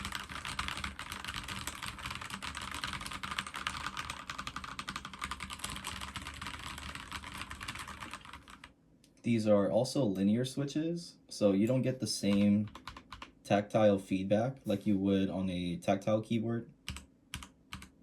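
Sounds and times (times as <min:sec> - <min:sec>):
mechanical keyboard typing: 0:00.0 - 0:08.7, 0:12.2 - 0:13.3, 0:16.9 - 0:18.0.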